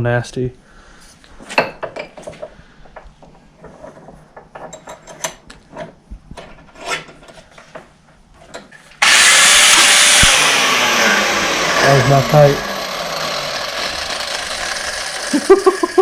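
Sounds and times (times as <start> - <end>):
angle grinder running: 9.0 - 16.0.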